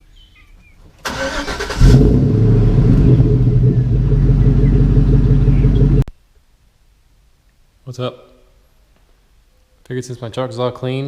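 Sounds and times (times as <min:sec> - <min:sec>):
car engine running: 0:01.1 - 0:06.1.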